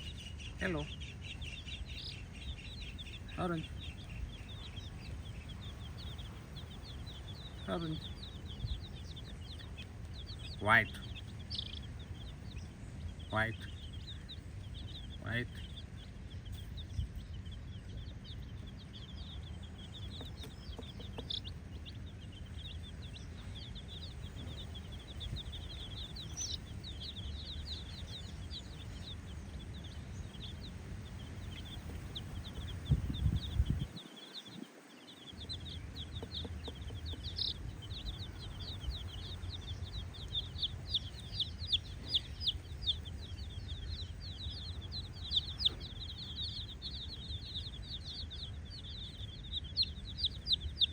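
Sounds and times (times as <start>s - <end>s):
low rumble: 0.0s - 34.0s
chicks peeping: 0.0s - 50.9s.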